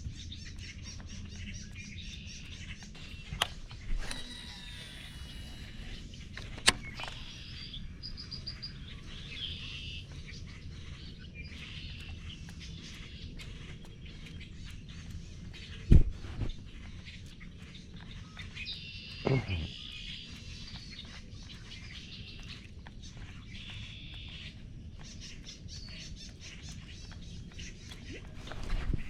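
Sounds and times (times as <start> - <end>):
birds chirping and calling: 0.0 - 29.0
sharp click: 2.5 - 7.5
heavy low thump: 15.9 - 16.6.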